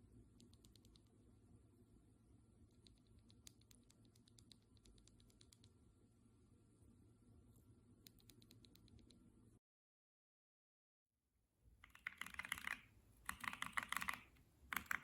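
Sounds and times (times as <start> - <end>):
soft mechanical keyboard typing: 2.7 - 5.8, 8.1 - 9.2, 11.8 - 15.0.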